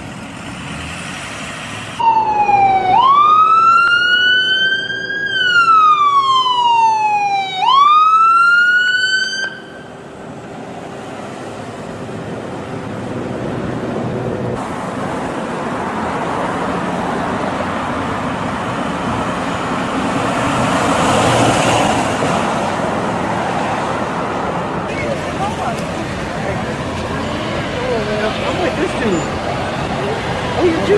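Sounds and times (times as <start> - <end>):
city street traffic: 0.0 - 30.9
ambulance siren: 2.0 - 10.0.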